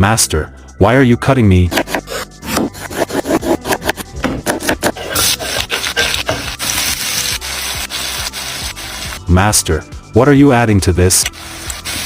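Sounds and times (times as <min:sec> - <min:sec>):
knife cutting on wooden board: 0:01.7 - 0:07.3.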